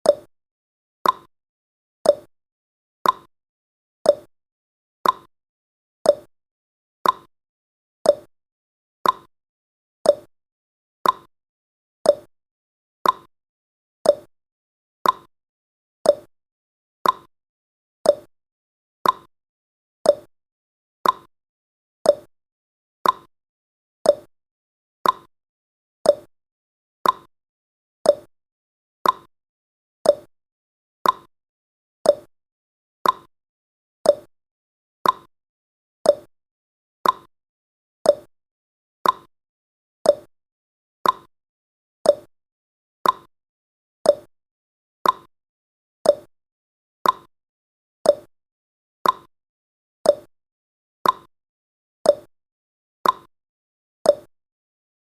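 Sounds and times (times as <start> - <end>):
timer ticking: 0.0 - 0.3, 1.0 - 1.3, 2.1 - 2.3, 3.0 - 3.3, 4.1 - 4.3, 5.0 - 5.3, 6.1 - 6.3, 7.0 - 7.3, 8.1 - 8.3, 9.0 - 9.3, 10.1 - 10.3, 11.0 - 11.3, 12.1 - 12.3, 13.0 - 13.3, 14.0 - 14.3, 15.0 - 15.3, 16.1 - 16.3, 17.0 - 17.3, 18.0 - 18.3, 19.0 - 19.3, 20.1 - 20.3, 21.0 - 21.3, 22.1 - 22.3, 23.0 - 23.3, 24.0 - 24.3, 25.0 - 25.3, 26.0 - 26.3, 27.0 - 27.3, 28.0 - 28.3, 29.0 - 29.3, 30.0 - 30.3, 31.0 - 31.3, 32.0 - 32.3, 33.0 - 33.3, 34.0 - 34.3, 35.0 - 35.3, 36.0 - 36.3, 37.0 - 37.3, 38.0 - 38.3, 39.0 - 39.3, 40.0 - 40.3, 41.0 - 41.3, 42.0 - 42.3, 43.0 - 43.3, 44.1 - 44.3, 45.0 - 45.3, 46.0 - 46.3, 47.0 - 47.3, 48.1 - 48.3, 49.0 - 49.3, 50.1 - 50.3, 51.0 - 51.3, 52.1 - 52.3, 53.0 - 53.3, 54.1 - 54.3.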